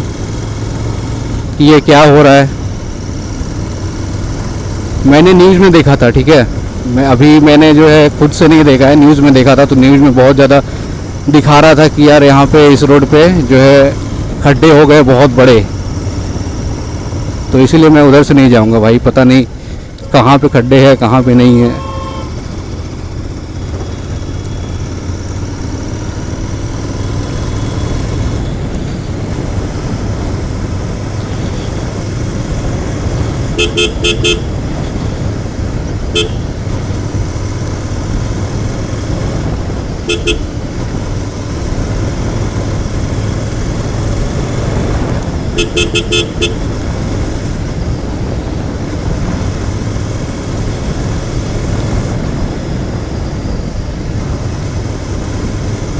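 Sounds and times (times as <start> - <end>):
motorcycle engine running: 0.0 - 55.9
road and wind rumble: 0.0 - 55.9
vehicle horn short beeps: 21.7 - 22.6, 33.5 - 34.6, 36.1 - 36.5, 40.1 - 40.6, 45.6 - 46.8.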